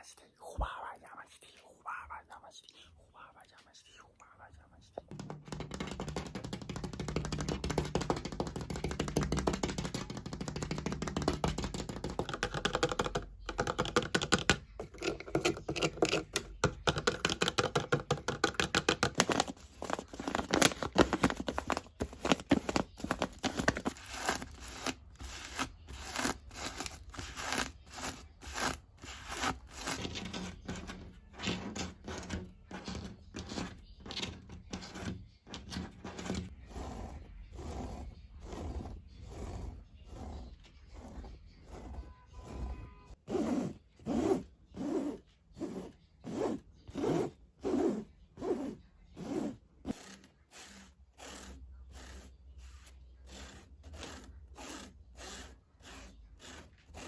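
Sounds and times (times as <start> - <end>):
knocking on hard surfaces: 5.1 - 19.5.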